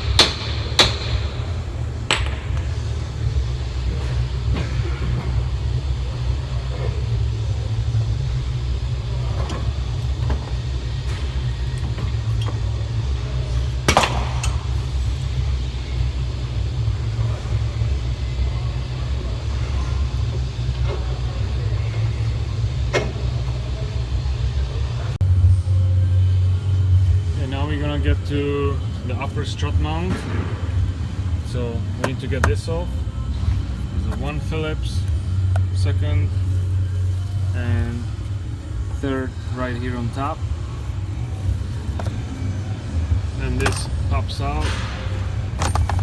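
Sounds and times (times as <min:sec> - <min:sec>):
low steady rumble: 0:00.0 - 0:46.0
hand tools clicking and knocking: 0:45.6 - 0:46.0.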